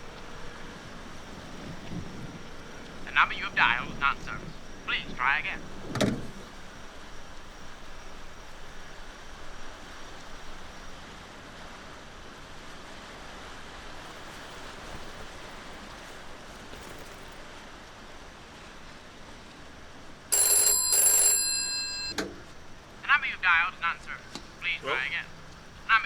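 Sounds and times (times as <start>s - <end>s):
telephone ringing: 0.0s - 6.6s, 20.3s - 26.0s
steady background hiss: 0.0s - 20.4s, 22.2s - 26.0s.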